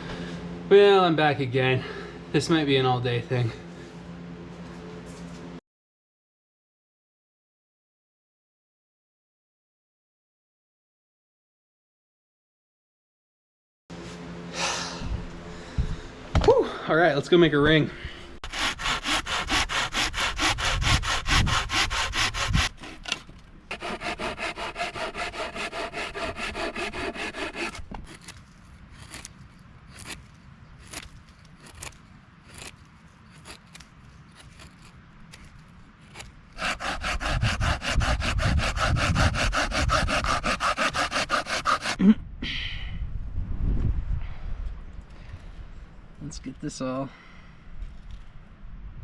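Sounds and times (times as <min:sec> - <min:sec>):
handsaw cutting wood: 0:18.4 - 0:42.0.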